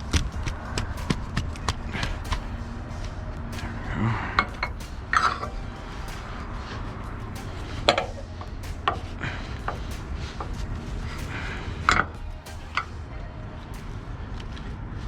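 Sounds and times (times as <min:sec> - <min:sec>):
low rumble: 0:00.0 - 0:15.0
metal strap hardware clanking: 0:03.5 - 0:12.9.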